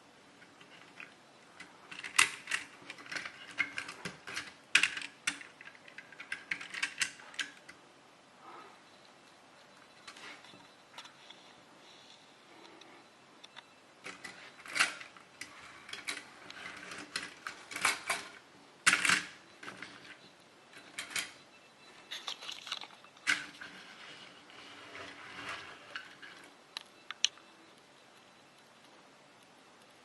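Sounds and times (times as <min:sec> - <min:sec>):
toy pieces clicking and clattering: 0:22.1 - 0:23.8.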